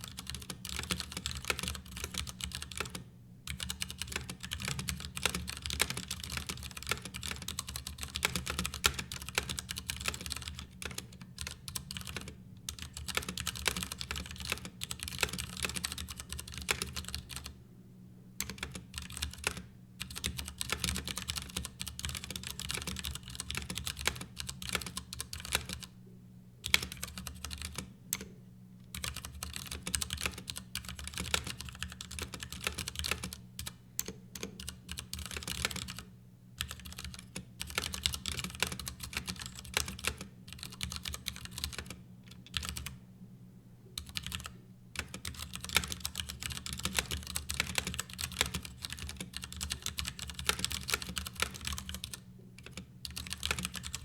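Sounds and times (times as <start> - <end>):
mechanical keyboard typing: 0.0 - 17.5, 18.4 - 25.9, 26.6 - 28.3, 28.9 - 43.0, 44.0 - 54.0.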